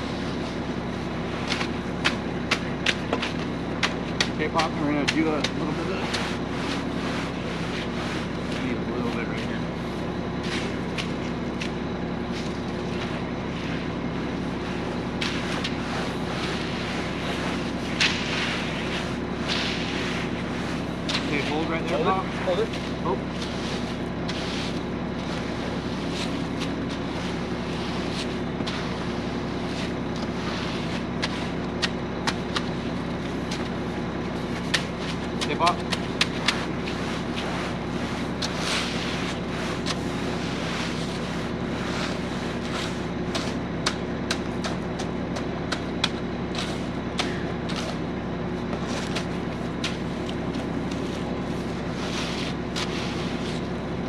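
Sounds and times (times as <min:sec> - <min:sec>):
engine idling: 0:00.0 - 0:54.0.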